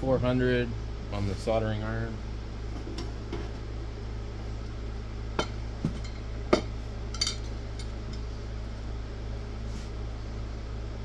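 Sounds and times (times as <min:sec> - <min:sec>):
steady low hum: 0:00.0 - 0:11.0
objects knocking on a workbench: 0:05.4 - 0:06.7.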